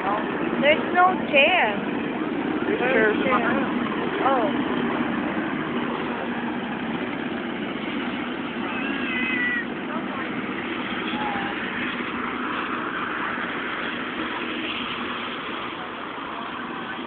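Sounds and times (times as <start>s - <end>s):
crowd chatter: 0.0s - 17.0s
engines running: 0.0s - 17.0s
high-pitched wavering cry: 8.6s - 9.7s.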